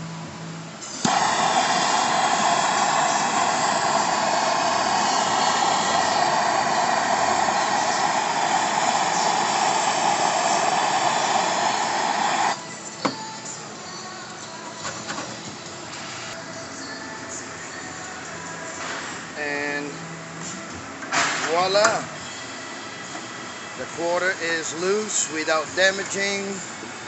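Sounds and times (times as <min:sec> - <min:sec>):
heat gun blowing hiss: 0:00.8 - 0:12.6.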